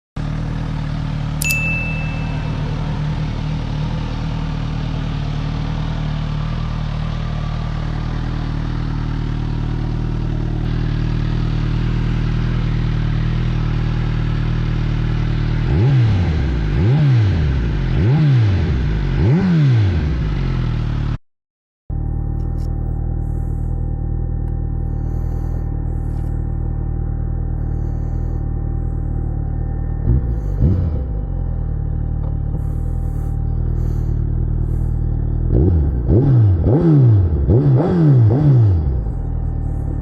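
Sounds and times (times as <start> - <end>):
motorcycle engine idling and revving: 0.2 - 21.2, 21.9 - 40.0
short beep: 1.4 - 3.2.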